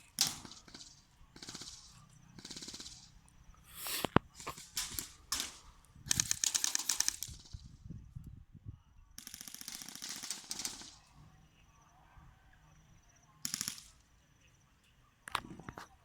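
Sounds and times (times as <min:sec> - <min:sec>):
airsoft guns firing: 0:00.0 - 0:07.8, 0:09.2 - 0:11.2, 0:13.4 - 0:14.1.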